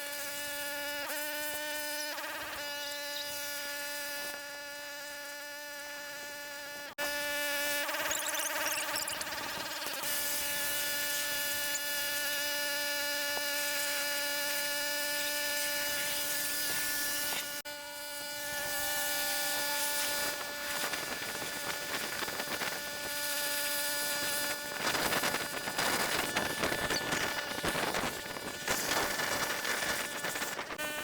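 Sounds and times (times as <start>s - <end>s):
small motor whining: 0.0s - 31.0s.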